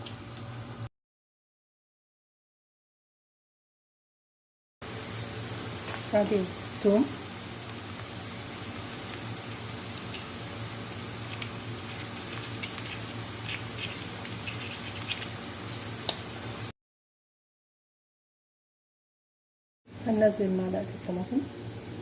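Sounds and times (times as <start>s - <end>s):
onions frying in oil: 0.0s - 0.9s, 4.8s - 16.7s, 19.9s - 22.0s
small crackles and pops: 5.6s - 6.2s, 11.2s - 16.2s.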